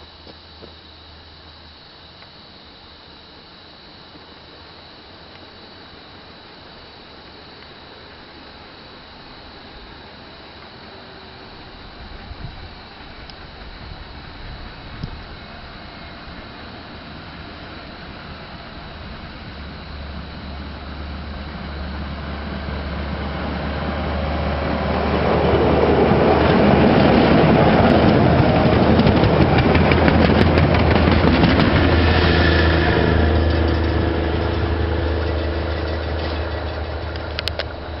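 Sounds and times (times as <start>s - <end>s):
rail motor car engine droning: 0.0s - 38.0s
wheels clicking on rails: 25.2s - 38.0s.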